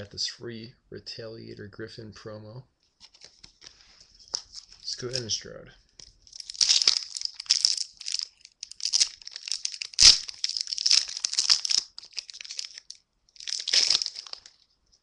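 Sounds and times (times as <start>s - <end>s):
wrapper crinkling and tearing: 3.0s - 5.4s, 6.0s - 14.8s.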